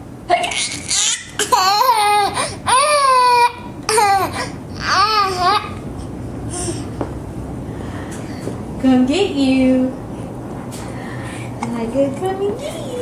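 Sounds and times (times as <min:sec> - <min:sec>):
baby squealing: 0:00.5 - 0:05.8.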